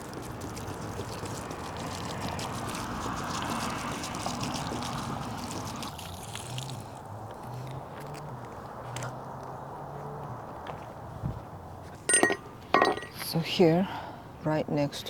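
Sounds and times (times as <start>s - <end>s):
water pouring onto soil: 0.0s - 7.1s.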